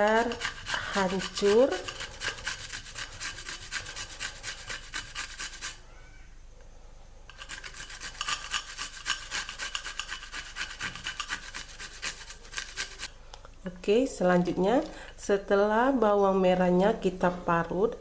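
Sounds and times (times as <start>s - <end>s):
grating on a cheese grater: 0.0s - 5.8s, 7.3s - 13.1s.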